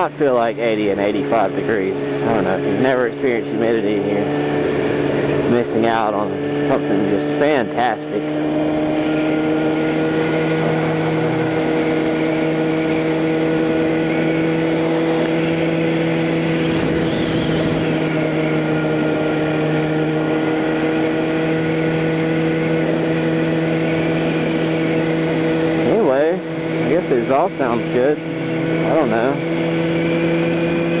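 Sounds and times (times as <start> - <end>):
motorcycle engine cruising: 0.0 - 31.0
wind noise rushing: 8.5 - 25.8.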